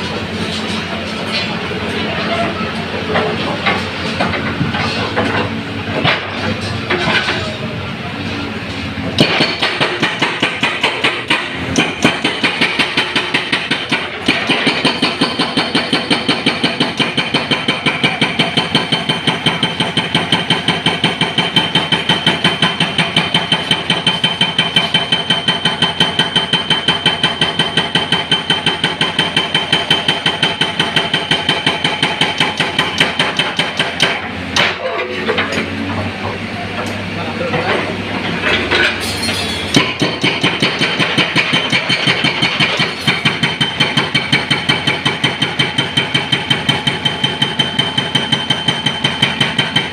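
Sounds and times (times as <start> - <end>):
hydraulic breaker hammering concrete: 9.1 - 35.7, 37.4 - 49.9.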